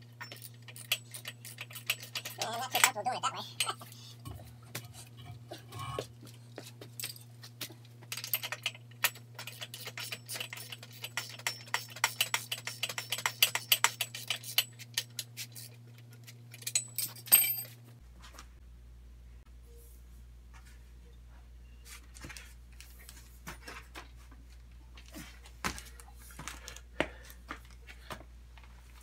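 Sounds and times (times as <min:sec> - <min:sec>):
ratchet wrench clicking: 0:08.4 - 0:15.1.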